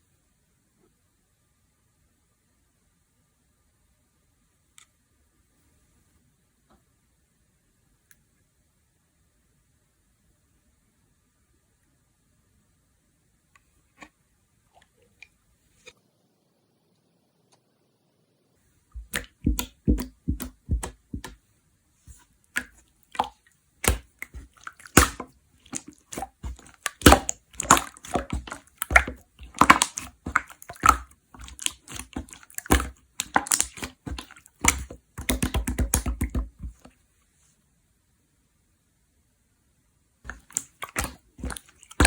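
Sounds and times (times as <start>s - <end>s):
slime squishing with sticky clicks: 19.0s - 21.4s, 22.1s - 36.9s, 40.3s - 42.0s.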